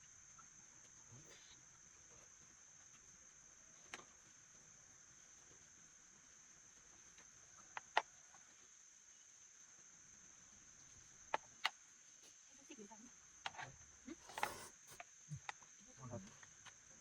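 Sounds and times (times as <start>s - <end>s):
crickets chirring: 0.0s - 17.0s.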